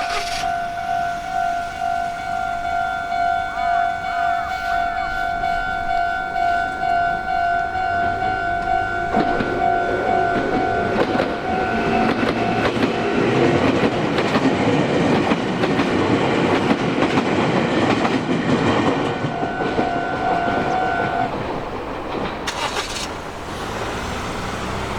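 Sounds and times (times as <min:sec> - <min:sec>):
short hiss: 0:00.0 - 0:00.6
level crossing warning bell: 0:00.0 - 0:22.9
train wheels clattering on rails: 0:00.0 - 0:24.9.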